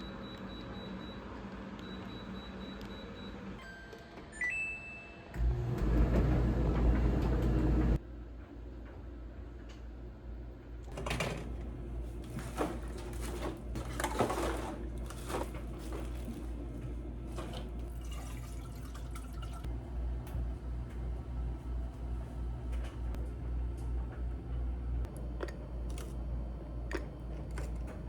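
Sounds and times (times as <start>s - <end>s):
loud appliance motor hum: 5.4s - 8.0s, 10.8s - 18.7s, 19.7s - 28.0s
objects clattering: 10.9s - 18.6s.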